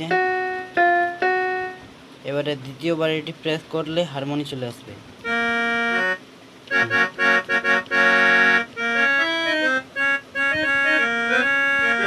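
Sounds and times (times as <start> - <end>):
electronic keyboard playing chords: 0.0 - 1.9, 5.2 - 12.0.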